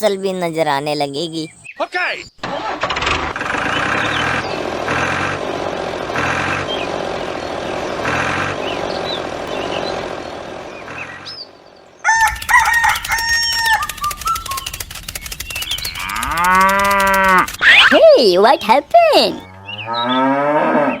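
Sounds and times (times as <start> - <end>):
small bird chirps: 11.0 - 20.1
rooster crowing: 12.0 - 14.2, 16.0 - 17.5.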